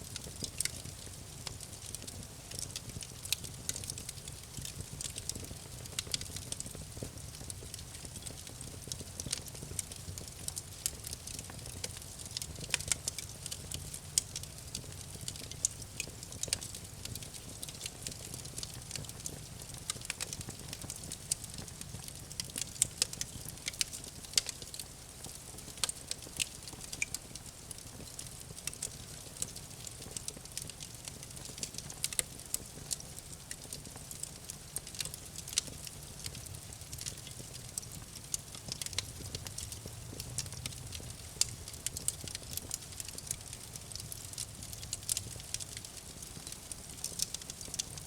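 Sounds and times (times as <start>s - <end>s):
low rumble of burning: 0.0s - 48.0s
campfire crackling pops: 27.8s - 48.0s.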